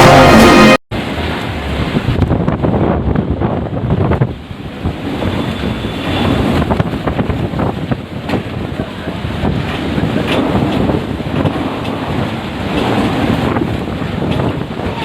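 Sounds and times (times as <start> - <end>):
heavy rain: 0.0 - 15.0
storm wind buffeting microphone: 0.0 - 15.0.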